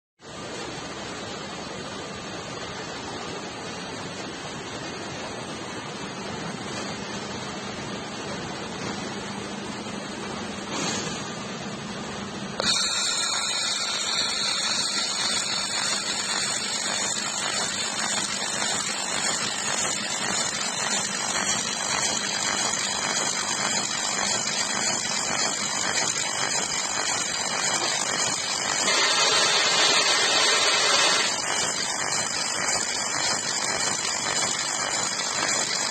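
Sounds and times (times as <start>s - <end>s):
welding machine hum and hiss: 0.2s - 35.9s
high whine: 5.8s - 35.9s
welding crackling: 12.5s - 35.9s.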